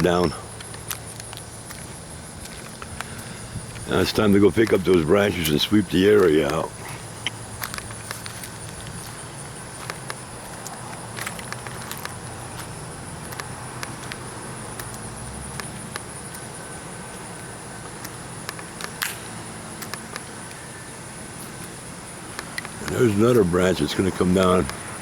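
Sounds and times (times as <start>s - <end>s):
sharp clicks and ticks: 0.0s - 16.5s, 17.9s - 20.6s, 22.3s - 25.0s
high-pitched insect drone: 0.0s - 25.0s
low steady hum: 0.0s - 25.0s.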